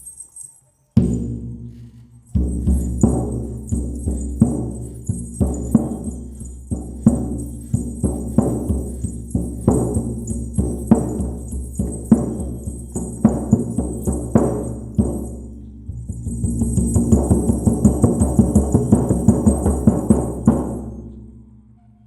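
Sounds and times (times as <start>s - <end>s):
frame drum beating: 1.0s - 21.5s.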